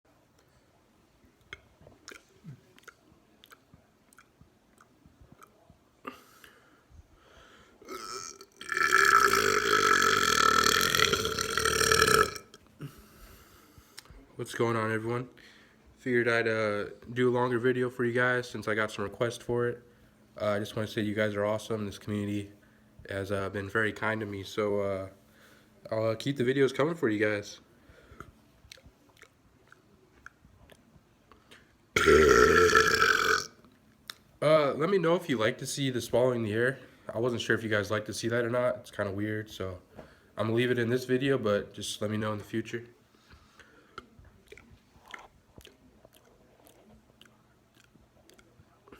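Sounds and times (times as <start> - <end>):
man burping: 7.8 - 12.9, 32.0 - 33.6.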